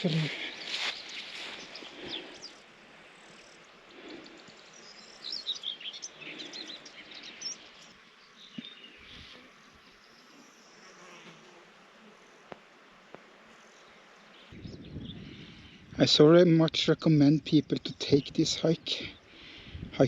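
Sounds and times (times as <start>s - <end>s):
small birds chirping: 0.0s - 11.2s, 13.6s - 19.9s
faint insect buzz: 0.0s - 15.9s.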